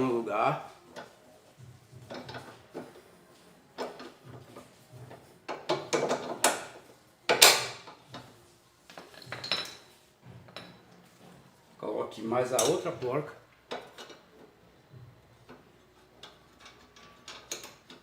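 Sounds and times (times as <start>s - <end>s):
metal nuts clinking and scraping: 3.8s - 8.3s, 8.9s - 11.0s, 13.7s - 14.3s, 16.0s - 18.0s.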